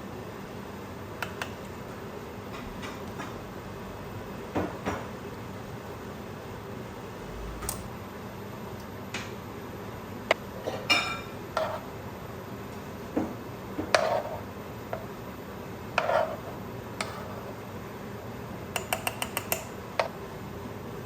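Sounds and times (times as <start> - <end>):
dishes and utensils clinking: 10.6 - 11.9.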